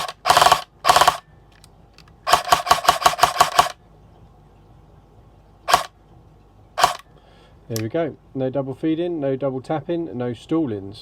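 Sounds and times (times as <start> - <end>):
airsoft gun gearbox firing bursts: 0.0 - 1.3, 2.2 - 3.8, 5.7 - 5.9, 6.8 - 7.0.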